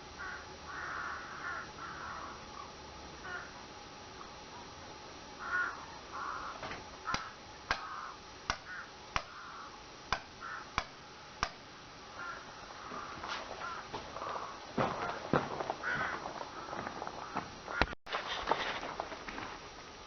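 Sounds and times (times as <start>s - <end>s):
harsh bird calls: 0.2s - 3.6s, 5.4s - 11.0s, 12.1s - 18.0s
sharp ticks: 7.1s - 7.9s, 10.1s - 11.6s.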